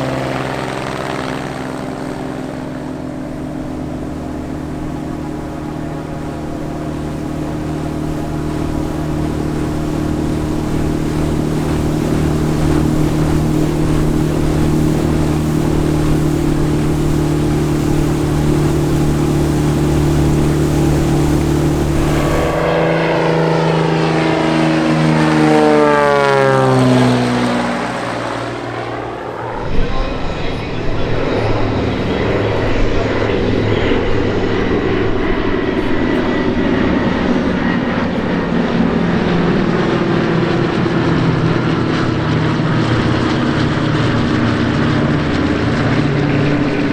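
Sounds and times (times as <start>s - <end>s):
propeller airplane flying past: 0.0s - 46.9s.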